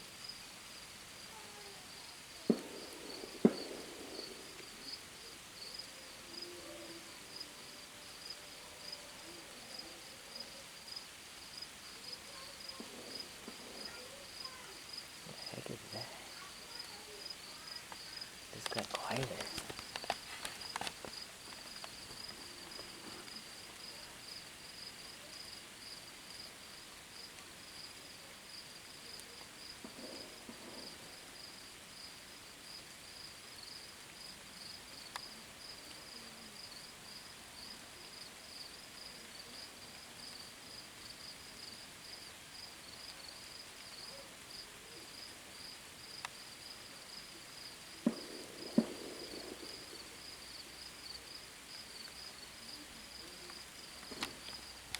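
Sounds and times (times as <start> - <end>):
crickets trilling: 0.2 - 54.9
sharp bangs: 2.5 - 5.0.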